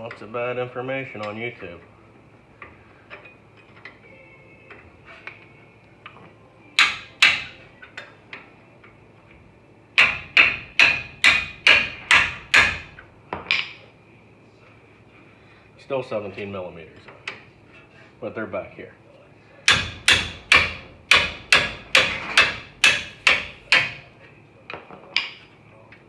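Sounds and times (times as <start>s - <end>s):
hammer striking metal: 6.8s - 7.7s, 10.0s - 13.8s, 19.7s - 24.1s.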